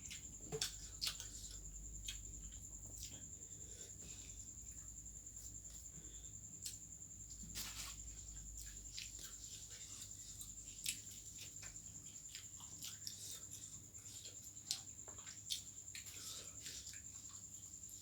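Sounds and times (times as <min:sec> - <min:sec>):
person chewing: 0:08.6 - 0:17.4.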